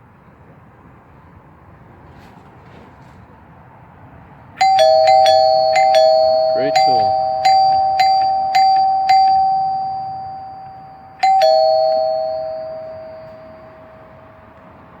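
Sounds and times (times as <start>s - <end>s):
ding-dong door chime: 4.6s - 14.5s
door chime dings: 4.6s - 14.5s.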